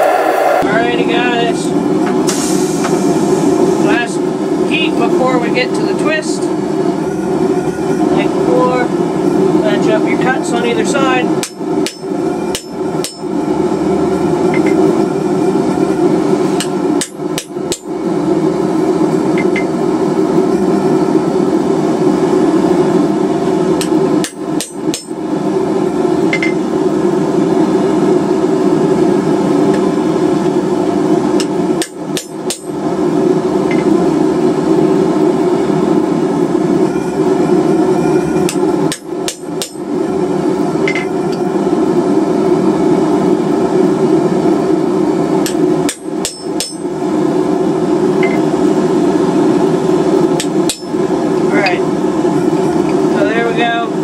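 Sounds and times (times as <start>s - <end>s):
hammering on hot steel: 11.4s - 13.3s, 16.6s - 18.0s, 23.8s - 25.2s, 31.4s - 32.8s, 38.4s - 39.9s, 45.4s - 46.9s, 50.4s - 51.0s.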